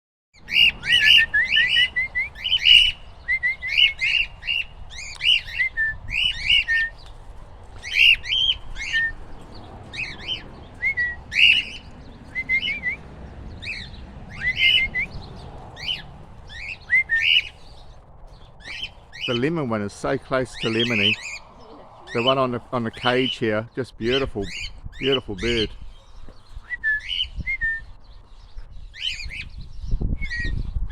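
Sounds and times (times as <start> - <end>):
cockatiels chirping and squawking: 0.4 - 7.2, 7.8 - 13.0, 13.6 - 19.4, 20.5 - 23.4, 24.0 - 27.3, 28.9 - 29.6.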